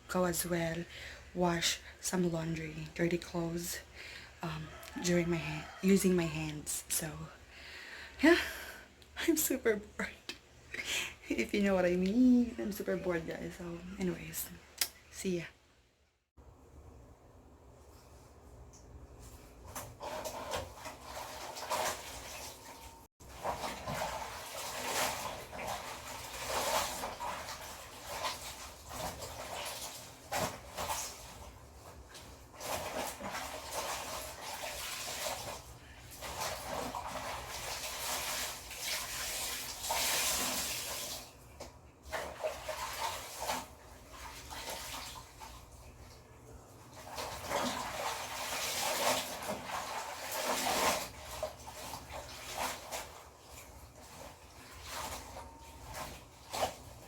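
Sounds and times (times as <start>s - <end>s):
water sloshing in a basin: 17.8s - 57.0s.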